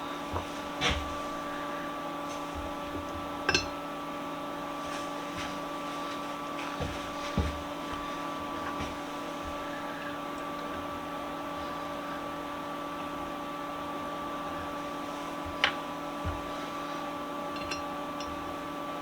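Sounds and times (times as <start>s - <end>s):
steady electrical hum: 0.0s - 19.0s
metal parts knocking and clinking: 17.5s - 18.3s.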